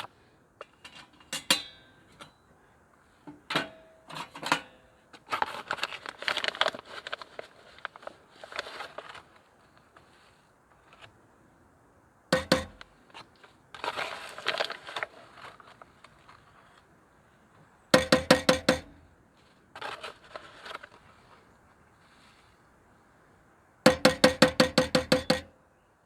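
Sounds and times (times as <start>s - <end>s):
crinkly rustling: 5.0s - 11.4s, 12.8s - 17.8s, 19.3s - 23.2s
sharp knocks: 12.4s - 12.8s, 18.0s - 19.0s, 23.9s - 25.5s.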